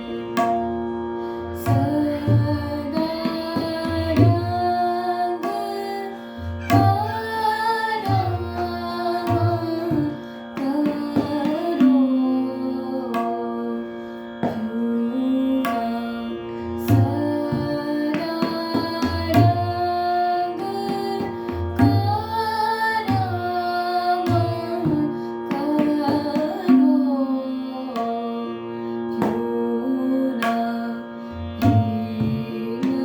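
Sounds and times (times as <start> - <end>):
tabla strokes: 0.0 - 0.9, 1.6 - 12.3, 16.8 - 27.1, 31.6 - 33.0
woman singing long gliding notes: 1.5 - 33.0.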